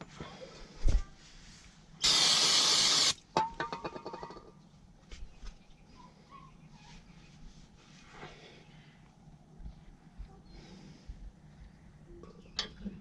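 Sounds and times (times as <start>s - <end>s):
aerosol can spray hiss: 2.0s - 3.2s.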